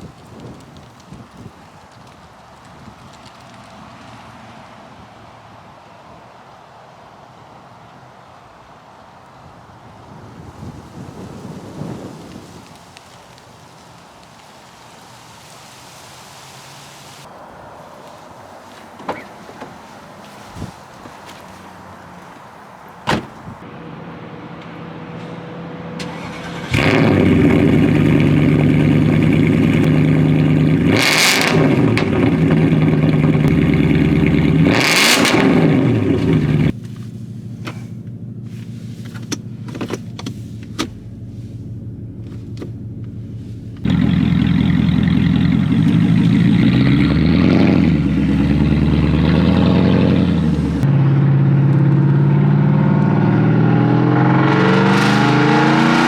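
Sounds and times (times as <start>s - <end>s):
exhaust crackles and pops: 0.0s - 4.8s, 10.2s - 23.7s, 26.0s - 50.9s, 51.7s - 56.0s
car engine revving: 16.9s - 23.7s, 25.8s - 56.0s.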